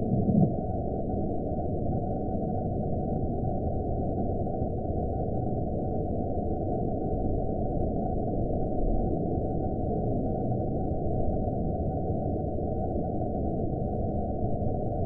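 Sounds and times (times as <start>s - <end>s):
faint thin tone: 0.0s - 0.6s
low rumbling drone: 0.0s - 1.8s.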